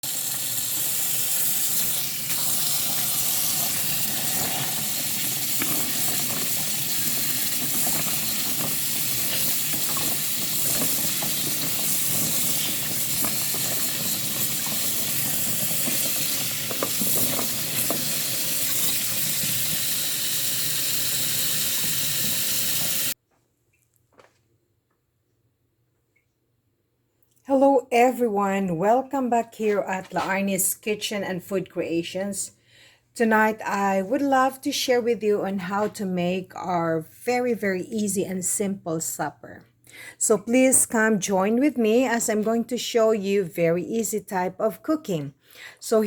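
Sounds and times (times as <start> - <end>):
food sizzling in oil: 0.0 - 23.2
oil crackling and popping: 0.0 - 23.2.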